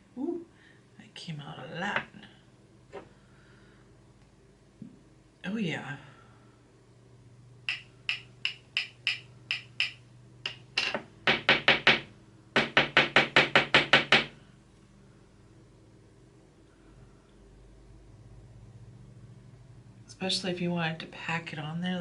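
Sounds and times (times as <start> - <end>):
makeup brush tapping on jar: 7.7 - 11.9.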